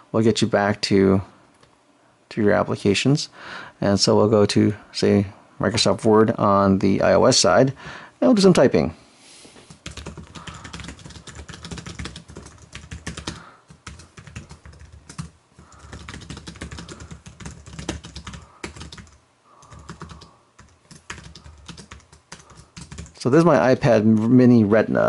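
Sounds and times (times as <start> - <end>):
keyboard keys clicking: 9.8 - 23.2.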